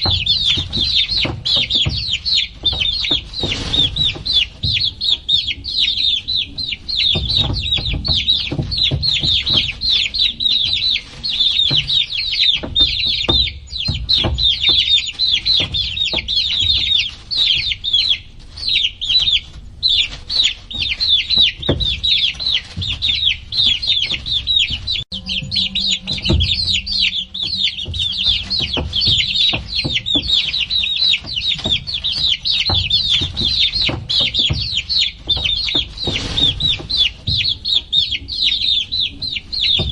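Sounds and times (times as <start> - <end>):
baby chicks peeping: 0.0 - 39.9
soft low thuds: 20.6 - 39.9
faint low hum: 22.1 - 35.4.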